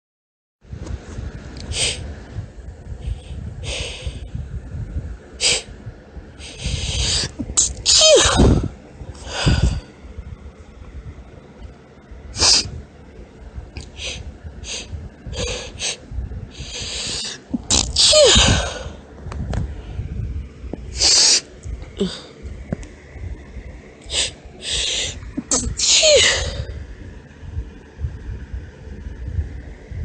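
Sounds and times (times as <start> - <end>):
breathy hitching inhale: 9.2 - 9.9, 13.9 - 17.5, 24.1 - 25.2.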